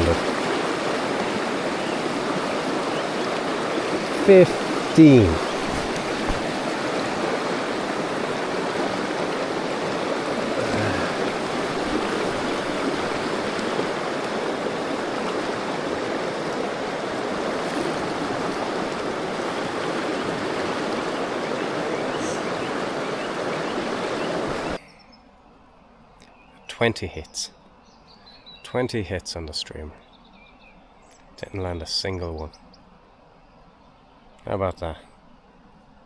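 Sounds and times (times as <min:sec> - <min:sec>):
river water rushing: 0:00.0 - 0:24.8.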